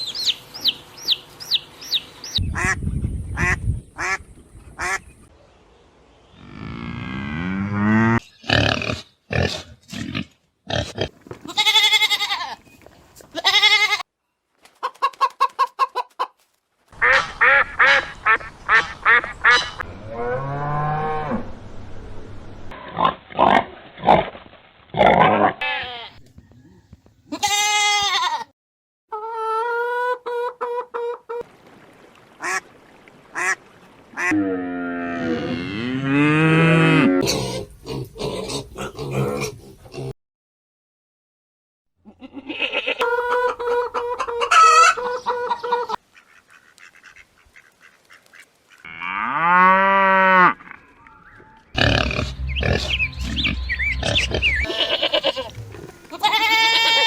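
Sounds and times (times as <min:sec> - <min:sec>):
ducks quacking: 0:02.2 - 0:02.8, 0:03.4 - 0:05.1, 0:14.8 - 0:19.9, 0:33.3 - 0:34.4, 0:42.5 - 0:48.9, 0:51.8 - 0:57.0
geese honking: 0:51.8 - 0:57.0.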